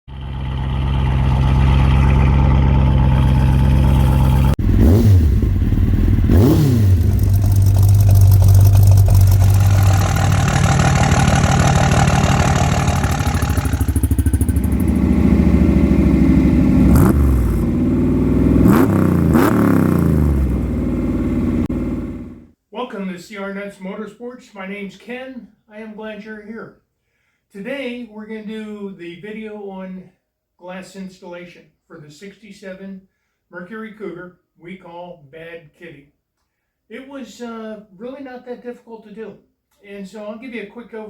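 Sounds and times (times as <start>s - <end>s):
car engine revving: 0.1s - 22.5s.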